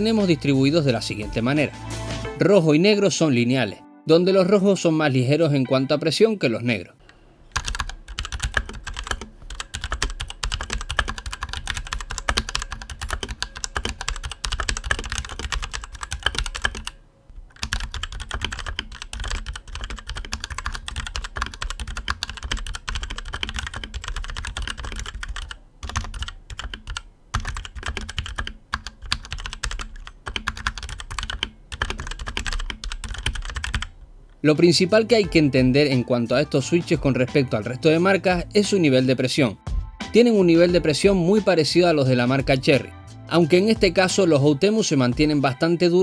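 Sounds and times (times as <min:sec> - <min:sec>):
fast typing on mechanical keyboard: 0:07.5 - 0:17.0, 0:17.6 - 0:33.9.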